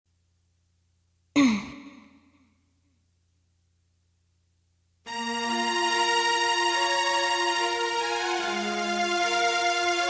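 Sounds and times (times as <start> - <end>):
faint low hum: 0.1 - 5.1.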